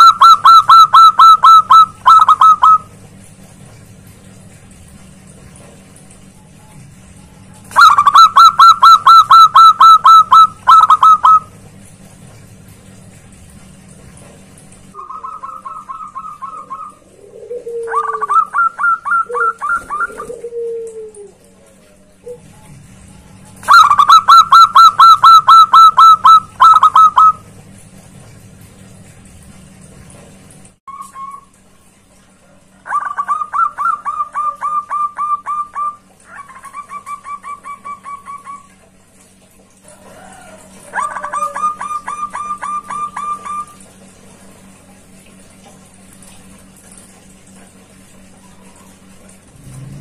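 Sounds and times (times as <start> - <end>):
dove cooing: 0.0 - 2.9, 7.7 - 11.5, 15.0 - 22.7, 23.6 - 27.4, 32.4 - 38.8, 39.9 - 43.9.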